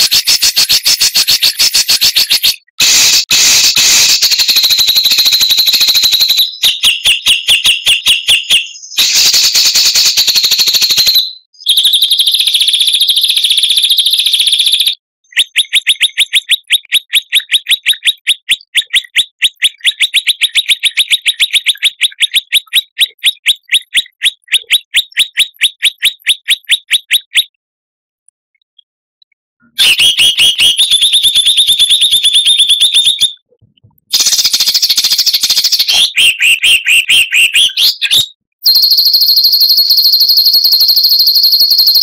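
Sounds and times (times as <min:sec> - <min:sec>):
sharp repeated bird notes: 0:00.0 - 0:27.6, 0:29.6 - 0:33.4, 0:34.0 - 0:42.0
songbird chattering: 0:15.3 - 0:27.5.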